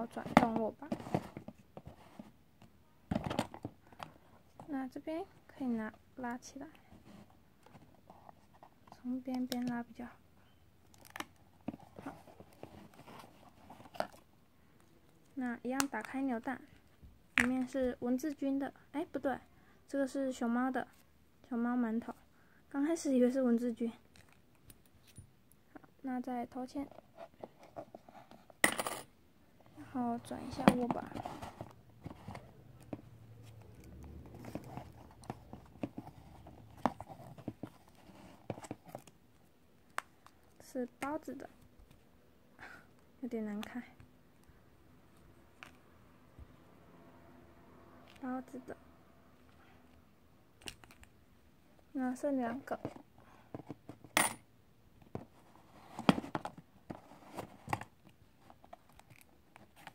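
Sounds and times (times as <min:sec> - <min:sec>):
rustling: 0:29.7 - 0:39.5
plastic capsule opening: 0:50.6 - 0:51.1.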